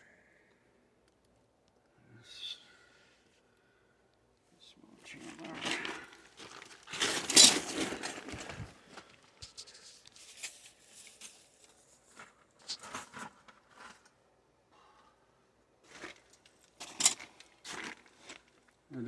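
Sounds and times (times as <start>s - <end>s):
rustling scrape: 5.2s - 14.0s.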